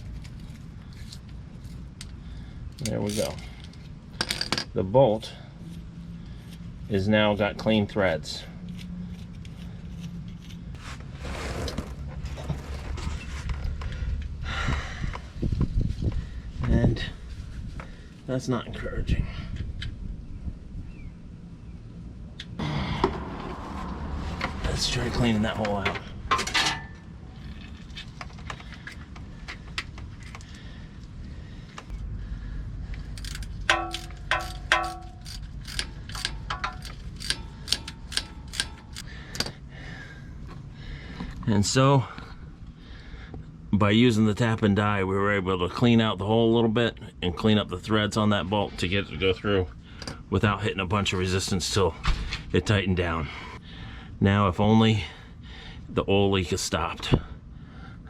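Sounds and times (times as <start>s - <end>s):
socket ratchet clicking: 33.1s - 39.5s.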